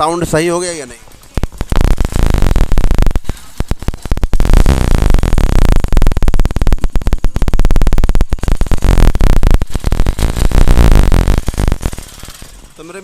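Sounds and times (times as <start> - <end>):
motorcycle engine running: 11.2 - 13.0.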